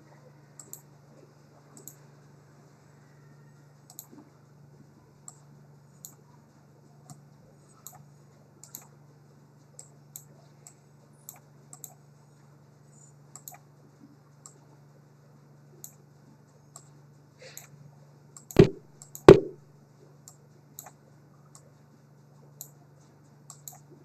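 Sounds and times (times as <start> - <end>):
mouse and keyboard clicking: 0.6 - 0.8, 1.8 - 2.0, 3.9 - 4.2, 8.6 - 8.9, 13.4 - 13.6, 23.5 - 23.9.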